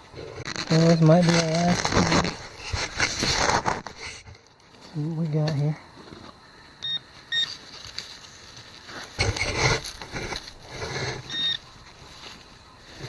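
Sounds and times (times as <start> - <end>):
digging in soil: 0.0 - 5.3, 7.5 - 13.0
metal detector beeps: 6.8 - 7.6, 11.2 - 11.9.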